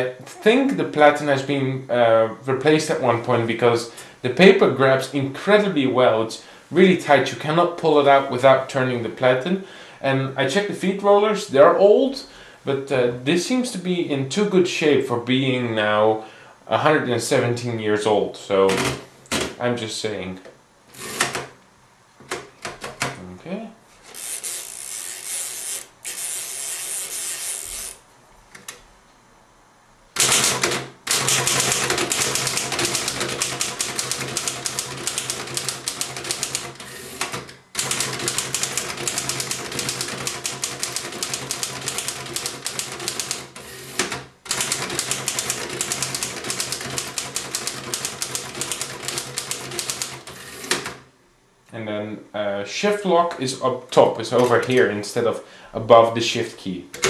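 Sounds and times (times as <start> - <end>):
manual typewriter keystrokes: 30.2 - 51.0.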